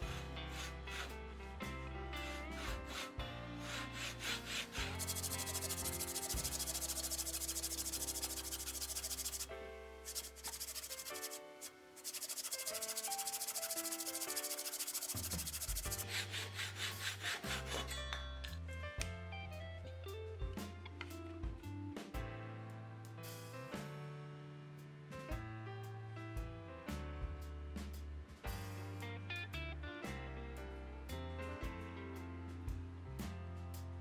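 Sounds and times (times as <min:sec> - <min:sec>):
wood being sanded: 0:00.0 - 0:01.2, 0:02.2 - 0:09.5, 0:10.1 - 0:17.9
background music with bass: 0:00.0 - 0:08.9, 0:18.3 - 0:34.0.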